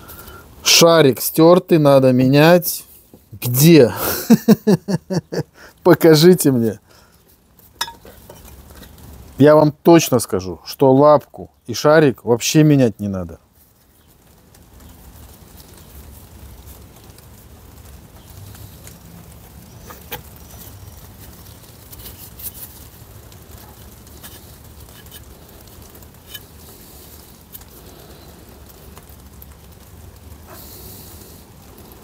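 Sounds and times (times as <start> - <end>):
metal parts clicking and tapping: 7.8 - 8.5.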